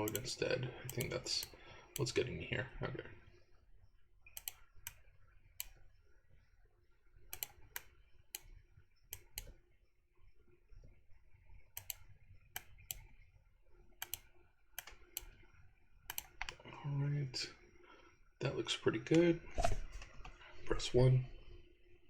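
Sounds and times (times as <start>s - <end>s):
mouse and keyboard clicks: 0.0s - 0.3s, 0.9s - 2.1s, 4.3s - 5.0s, 7.3s - 9.6s, 11.8s - 13.2s, 14.0s - 15.4s, 16.1s - 16.6s.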